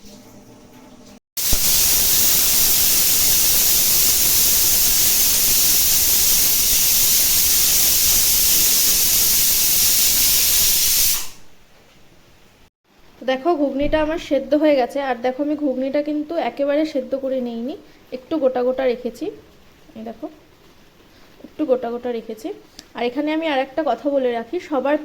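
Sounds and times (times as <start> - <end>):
pressure cooker hissing steam: 1.4 - 11.5.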